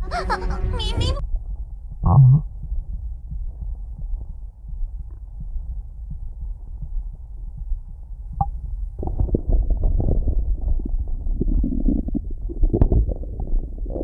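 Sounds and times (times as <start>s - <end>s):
heartbeat thumps: 0.0s - 14.0s
stomach gurgling: 2.0s - 2.5s, 8.4s - 14.0s.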